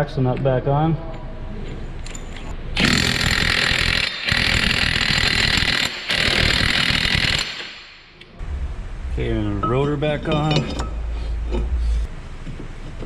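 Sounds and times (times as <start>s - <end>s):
impact wrench bursts: 2.8s - 8.2s.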